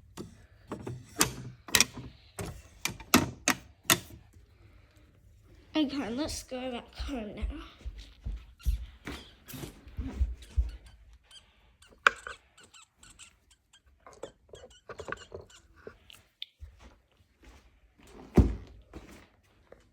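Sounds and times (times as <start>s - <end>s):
toys knocking and scraping: 0.0s - 4.2s, 8.6s - 16.2s.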